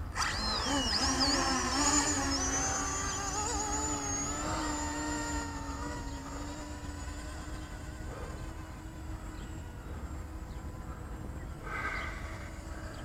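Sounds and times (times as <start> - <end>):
electric motors and propellers buzzing: 0.0 - 13.0.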